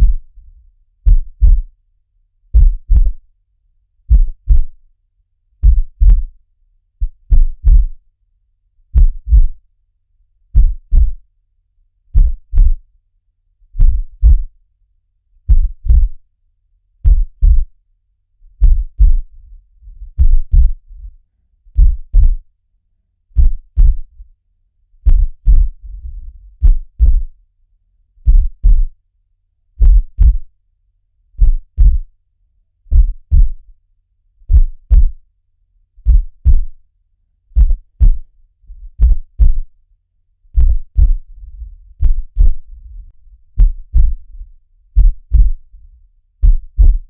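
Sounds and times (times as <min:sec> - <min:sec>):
heartbeat thumps: 0:00.0 - 0:00.3, 0:01.0 - 0:01.7, 0:02.5 - 0:03.2, 0:04.1 - 0:04.8, 0:05.6 - 0:06.3, 0:07.0 - 0:08.0, 0:08.9 - 0:09.6, 0:10.6 - 0:11.2, 0:12.1 - 0:12.8, 0:13.8 - 0:14.5, 0:15.5 - 0:16.2, 0:17.0 - 0:17.7, 0:18.6 - 0:19.3, 0:19.9 - 0:21.2, 0:21.8 - 0:22.4, 0:23.4 - 0:24.2, 0:25.0 - 0:27.3, 0:28.2 - 0:28.9, 0:29.8 - 0:30.5, 0:31.4 - 0:32.1, 0:32.9 - 0:33.7, 0:34.5 - 0:35.2, 0:36.0 - 0:36.8, 0:37.6 - 0:38.3, 0:38.9 - 0:39.8, 0:40.6 - 0:45.7, 0:46.4 - 0:47.0
faint low rumble: 0:00.0 - 0:01.8, 0:02.4 - 0:03.4, 0:04.0 - 0:04.9, 0:05.6 - 0:06.4, 0:07.0 - 0:08.0, 0:08.8 - 0:09.7, 0:10.5 - 0:11.3, 0:12.1 - 0:12.9, 0:13.6 - 0:14.6, 0:15.4 - 0:16.3, 0:17.0 - 0:17.8, 0:18.4 - 0:22.5, 0:23.4 - 0:24.4, 0:25.0 - 0:27.5, 0:28.2 - 0:29.0, 0:29.8 - 0:30.6, 0:31.4 - 0:32.2, 0:32.9 - 0:33.8, 0:34.4 - 0:35.3, 0:36.0 - 0:36.8, 0:37.5 - 0:39.9, 0:40.5 - 0:47.0.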